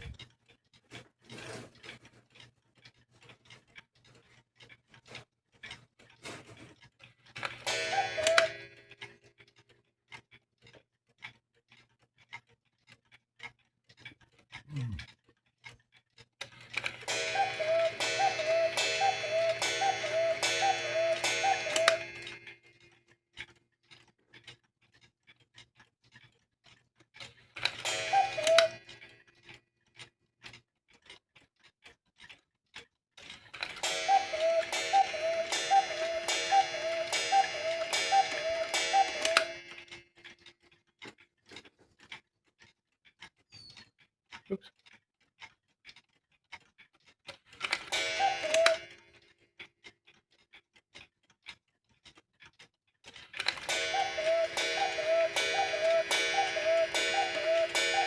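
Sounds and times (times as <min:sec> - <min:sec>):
clock ticking: 0:01.3 - 0:29.3, 0:30.0 - 0:43.4, 0:44.3 - 0:58.0
cuckoo clock calls: 0:07.4 - 0:09.1, 0:16.7 - 0:22.6, 0:27.6 - 0:29.2, 0:33.5 - 0:40.2, 0:47.6 - 0:49.2, 0:53.1 - 0:58.0.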